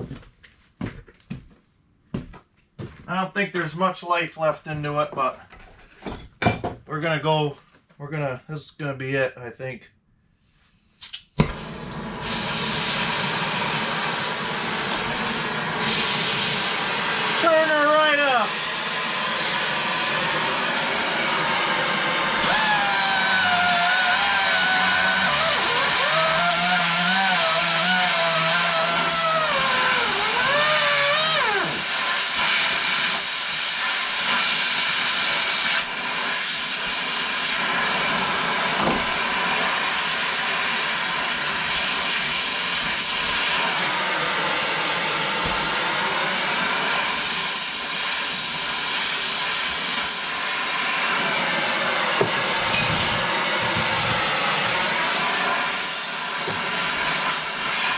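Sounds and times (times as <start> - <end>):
pneumatic angle grinder whine: 11.4 - 57.9
hissing air rush: 11.5 - 57.9.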